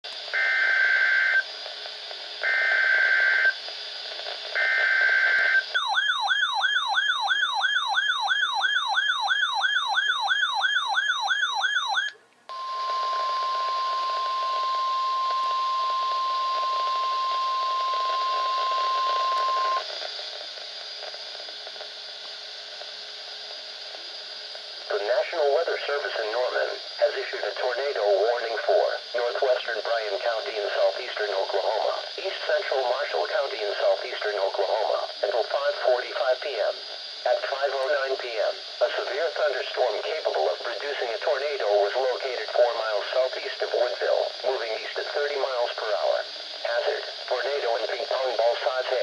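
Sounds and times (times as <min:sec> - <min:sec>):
faint radio hiss: 0:00.1 - 0:05.9, 0:11.8 - 0:49.0
steady single-pitch alarm tone: 0:04.6 - 0:19.8.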